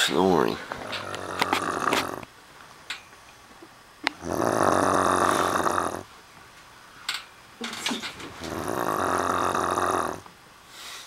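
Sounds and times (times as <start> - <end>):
person snoring loudly: 0.8 - 2.3, 4.2 - 6.1, 8.4 - 10.3.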